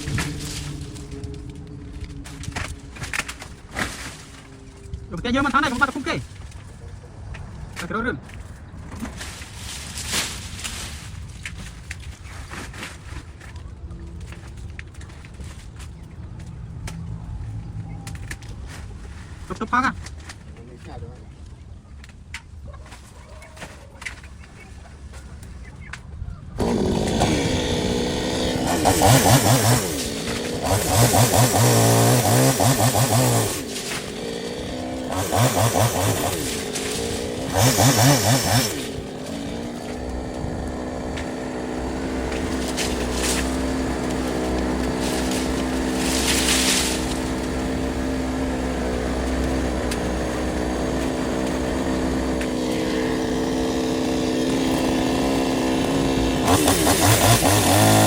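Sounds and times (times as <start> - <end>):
chainsaw engine revving: 0.0 - 6.7, 26.6 - 58.0
chainsaw idling: 0.0 - 6.7, 26.6 - 58.0.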